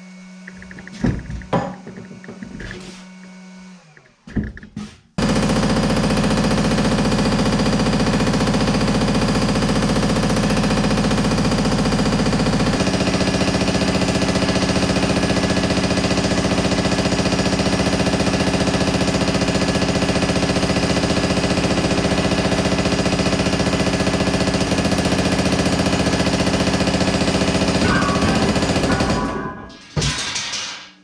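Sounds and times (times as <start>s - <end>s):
power hammer striking sheet metal: 26.7s - 31.0s.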